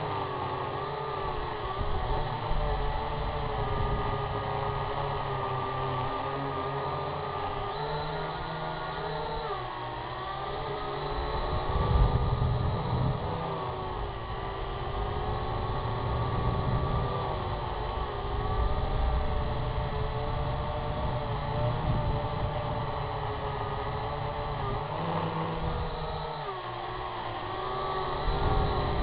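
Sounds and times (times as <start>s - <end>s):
drone motors whining: 0.0s - 29.0s
gusty low rumble: 11.4s - 24.6s, 28.0s - 29.0s.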